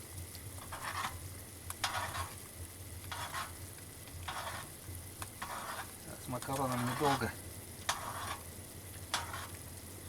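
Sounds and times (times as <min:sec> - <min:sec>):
boiling water: 0:00.0 - 0:10.0
spoon scraping pasta in pot: 0:00.6 - 0:09.6.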